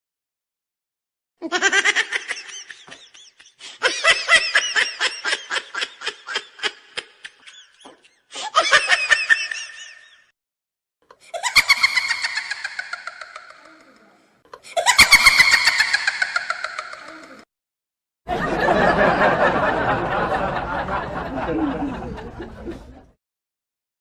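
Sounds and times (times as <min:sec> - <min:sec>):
high-pitched giggling laughter: 0:01.4 - 0:10.3, 0:11.2 - 0:14.0, 0:14.6 - 0:17.5.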